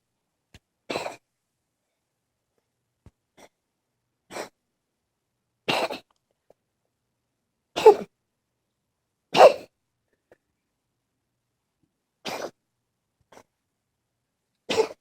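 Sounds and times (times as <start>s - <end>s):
cat coughing: 0.9s - 1.2s, 4.3s - 4.6s, 5.7s - 6.1s, 7.8s - 8.1s, 9.3s - 9.7s, 12.2s - 12.6s, 14.7s - 15.0s.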